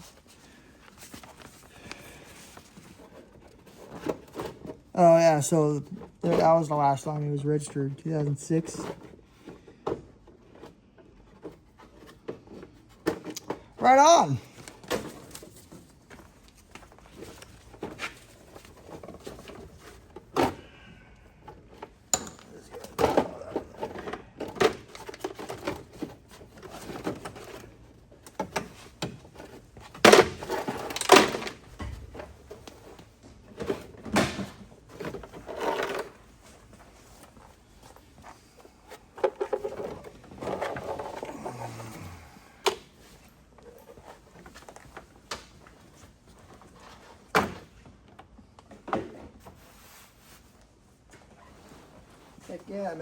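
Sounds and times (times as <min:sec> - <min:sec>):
car parts and tools clunking: 0:14.7 - 0:38.2.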